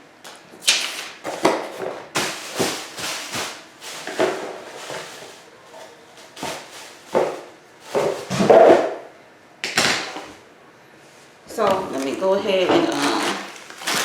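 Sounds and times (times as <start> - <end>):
rustling of packaging: 0.8 - 5.5, 6.2 - 8.4, 11.9 - 14.0.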